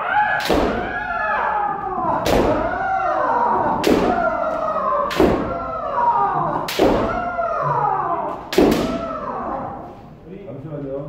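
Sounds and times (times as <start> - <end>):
person shouting: 0.0 - 9.9
kendo strikes cracking: 0.3 - 1.2, 1.9 - 2.9, 3.5 - 7.5, 8.2 - 9.6.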